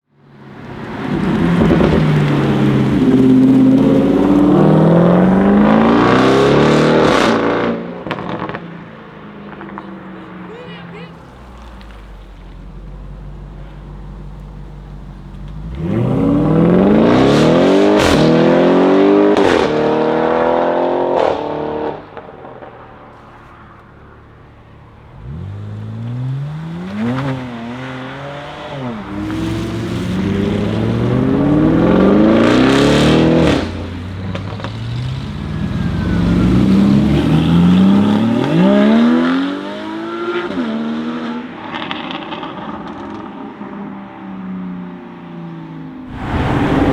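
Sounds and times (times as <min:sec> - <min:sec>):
car engine accelerating hard: 0:00.4 - 0:46.9
exhaust cracks: 0:00.6 - 0:18.5, 0:46.0 - 0:46.9.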